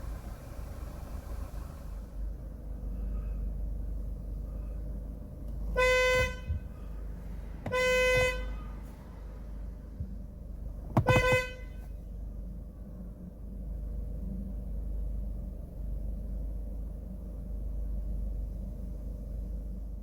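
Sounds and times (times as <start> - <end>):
car horn blasts: 5.7 - 6.7, 7.6 - 8.9, 11.0 - 11.9.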